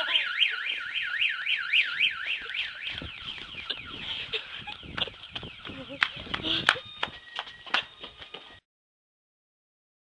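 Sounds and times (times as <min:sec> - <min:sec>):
car alarm siren wailing: 0:00.0 - 0:07.7.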